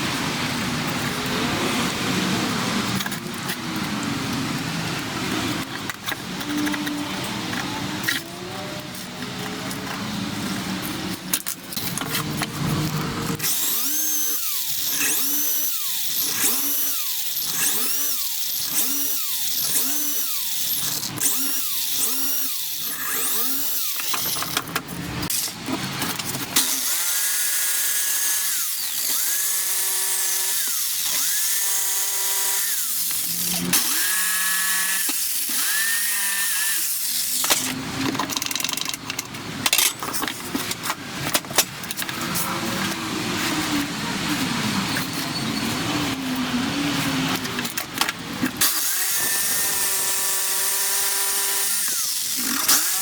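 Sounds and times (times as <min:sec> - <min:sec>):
power drill whining: 0:13.3 - 0:24.6, 0:26.6 - 0:37.7, 0:48.6 - 0:53.0.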